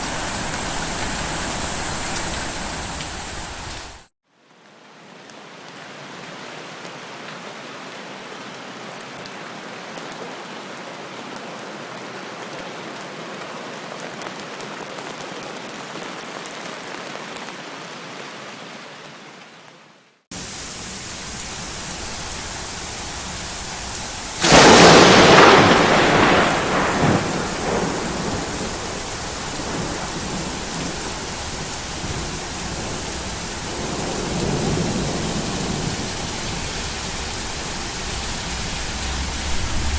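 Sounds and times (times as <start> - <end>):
thunderclap rumbling: 0.0 - 4.1, 22.2 - 39.9
steady rain falling: 0.0 - 39.9.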